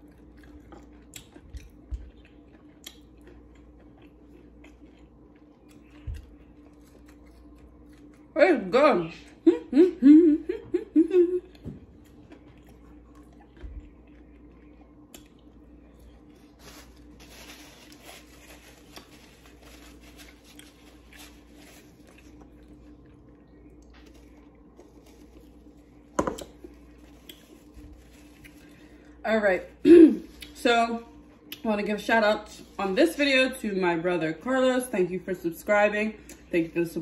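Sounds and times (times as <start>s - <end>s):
chewing crunchy fried food: 0.0s - 8.4s, 11.4s - 29.2s
steady low hum: 0.0s - 37.0s.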